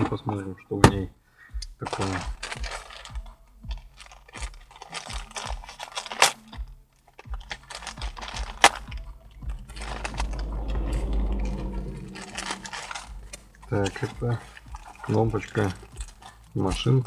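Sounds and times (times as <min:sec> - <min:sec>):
low handling rumble: 0:07.6 - 0:15.6.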